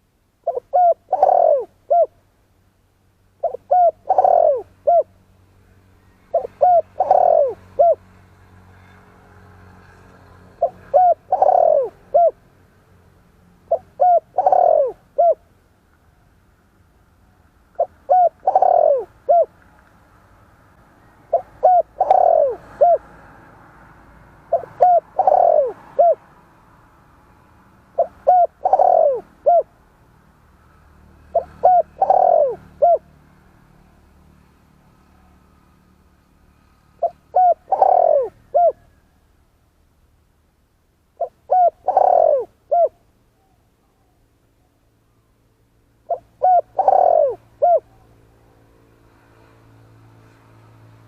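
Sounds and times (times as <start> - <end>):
dove cooing: 0.4 - 2.2, 3.4 - 5.2, 6.3 - 8.1, 9.9 - 12.4, 13.6 - 15.4, 17.8 - 19.6, 21.3 - 23.1, 24.4 - 26.3, 28.0 - 29.7, 31.3 - 33.1, 36.6 - 39.0, 41.2 - 44.2, 46.1 - 48.2.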